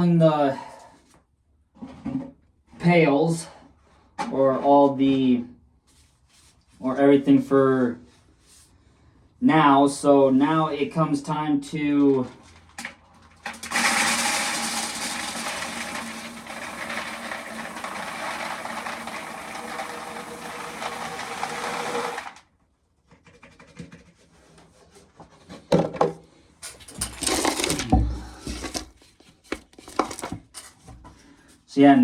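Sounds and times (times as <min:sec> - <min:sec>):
corn sheller running: 0:13.4 - 0:22.4, 0:27.0 - 0:28.9, 0:29.6 - 0:30.4
heavy thumps: 0:27.0 - 0:29.0.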